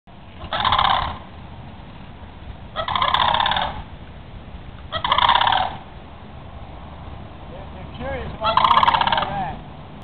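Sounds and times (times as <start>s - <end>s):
cranes rattling calls: 0.4s - 1.3s, 2.7s - 3.9s, 4.8s - 5.9s, 8.2s - 9.6s.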